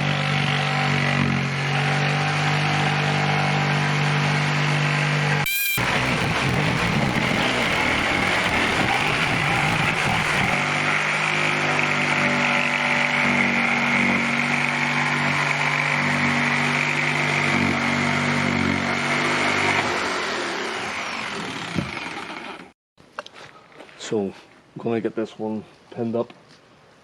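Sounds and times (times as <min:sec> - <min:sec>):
jigsaw cutting plywood: 0:05.4 - 0:22.7.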